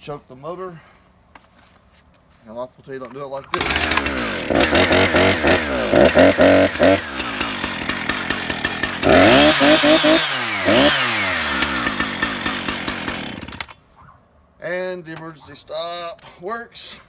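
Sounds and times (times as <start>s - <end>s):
chainsaw revving and idling: 3.5s - 13.8s.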